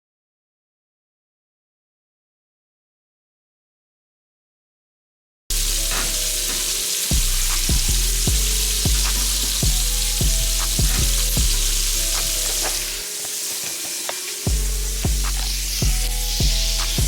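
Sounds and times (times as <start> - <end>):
chicken sizzling in hot oil: 5.5 - 17.0
music with deep bass beat: 5.5 - 17.0.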